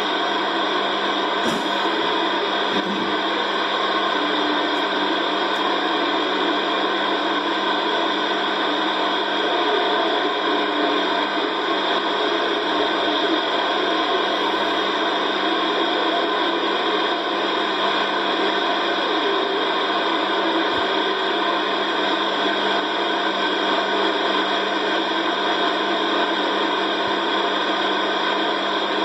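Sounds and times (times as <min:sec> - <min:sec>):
radio static hiss: 0:00.0 - 0:06.6, 0:14.0 - 0:16.2.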